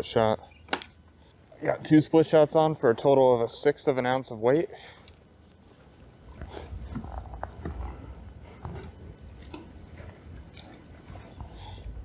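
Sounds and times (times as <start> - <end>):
small clicks and creaks: 5.0 - 11.6.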